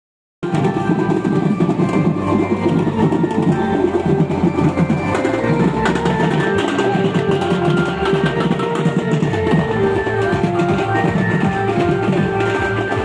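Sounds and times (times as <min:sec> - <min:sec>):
drum-heavy music over sound system: 0:00.4 - 0:13.0.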